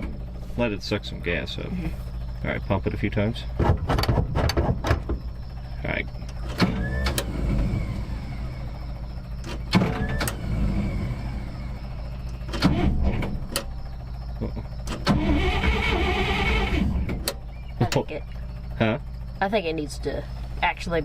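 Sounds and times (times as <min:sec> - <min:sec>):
engine starter cranking: 0:06.2 - 0:14.0, 0:14.6 - 0:18.6.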